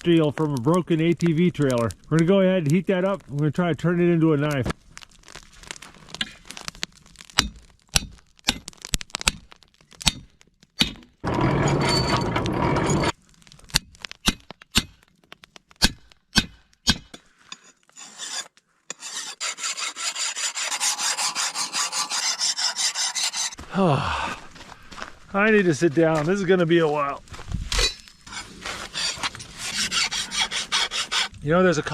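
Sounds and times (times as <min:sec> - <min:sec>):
hammer striking hot steel: 0:15.8 - 0:17.7
hand file rasping on steel: 0:17.5 - 0:23.6, 0:28.3 - 0:31.3.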